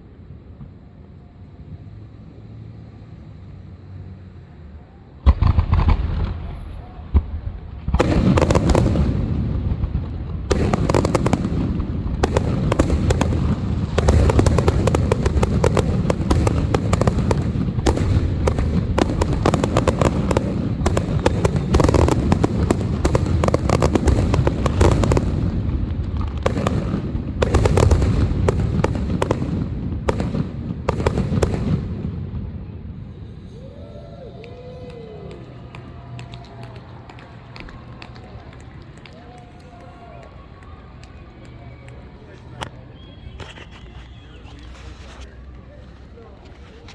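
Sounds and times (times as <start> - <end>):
fireworks booming and crackling: 5.2 - 33.8.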